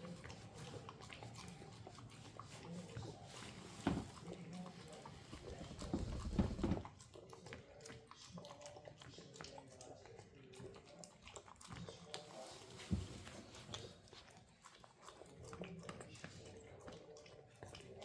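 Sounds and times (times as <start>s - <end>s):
heavy bumps: 5.7s - 6.9s.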